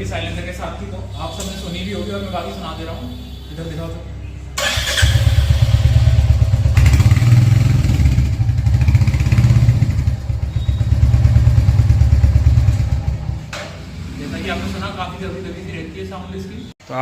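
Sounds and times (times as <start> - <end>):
muffled motorcycle engine thumping: 8.2 - 13.8.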